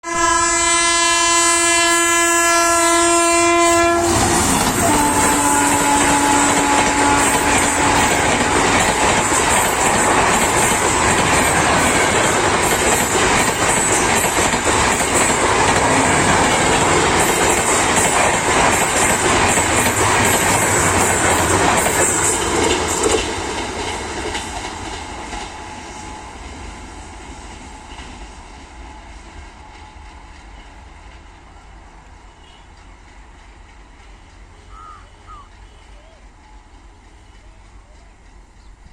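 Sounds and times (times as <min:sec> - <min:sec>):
train horn: 0:00.0 - 0:09.4, 0:32.2 - 0:32.9
train wheels clacking on rails: 0:04.1 - 0:31.5, 0:32.3 - 0:34.7, 0:35.3 - 0:38.9.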